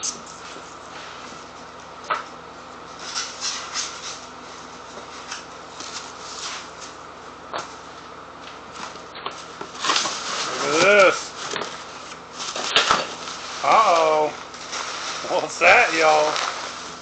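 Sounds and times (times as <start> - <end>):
packing scraping and rustling: 9.8 - 17.0.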